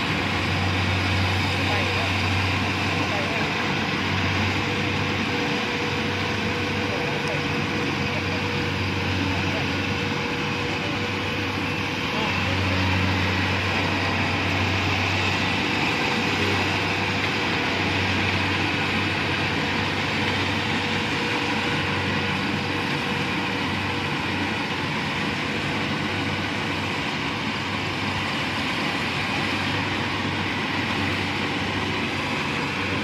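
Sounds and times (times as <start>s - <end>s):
combine harvester running: 0.0s - 33.0s.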